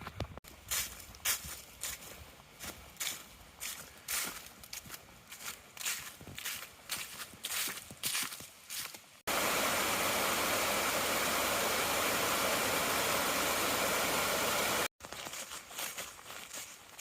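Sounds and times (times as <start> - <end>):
footsteps on a trail: 0.0 - 9.3, 14.9 - 17.0
loud steady hiss: 9.3 - 14.9.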